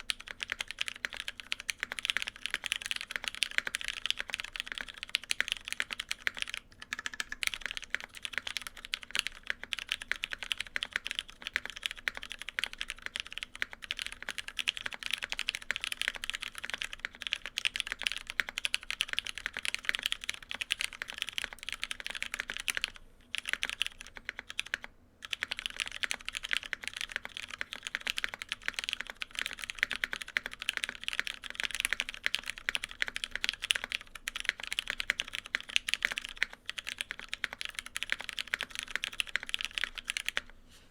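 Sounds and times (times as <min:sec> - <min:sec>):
fast typing on mechanical keyboard: 0:00.0 - 0:40.5.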